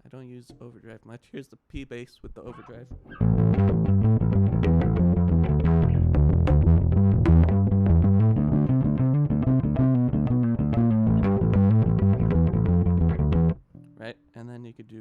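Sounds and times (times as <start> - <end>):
distorted electric bass run: 3.2 - 13.6.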